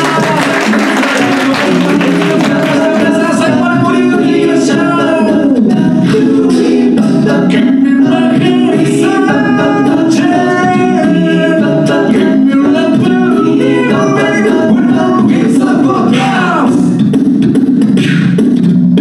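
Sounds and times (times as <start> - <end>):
group singing in harmony: 0.0 - 17.1
steady beat: 0.0 - 19.0.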